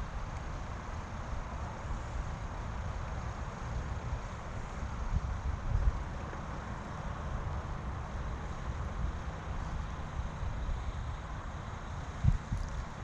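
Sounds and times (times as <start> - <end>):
wind buffeting microphone: 5.0 - 7.7, 12.1 - 13.0.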